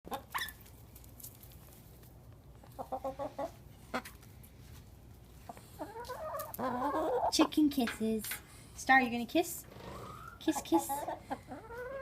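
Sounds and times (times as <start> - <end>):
chicken clucking: 0.1 - 0.7, 2.6 - 4.2, 5.4 - 7.5, 9.9 - 12.0.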